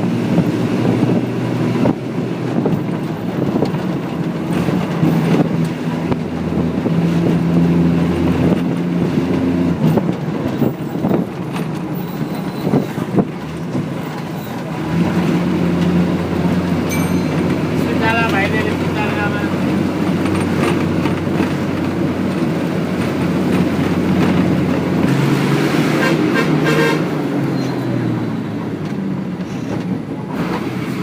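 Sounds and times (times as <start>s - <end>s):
bus engine drone: 0.0s - 31.0s
road noise: 0.0s - 31.0s.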